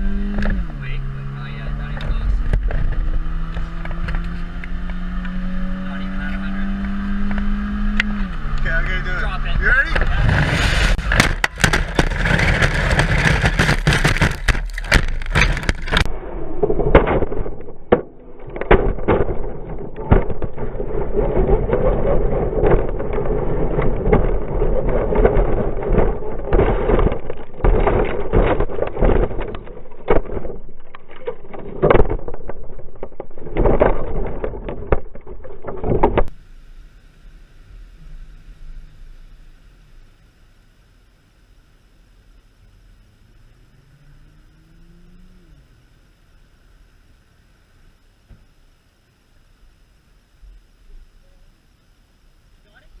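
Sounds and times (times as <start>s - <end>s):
wind and road noise: 0.0s - 40.8s
faint hum: 0.0s - 53.0s
toy car tumbling on road: 8.6s - 36.4s.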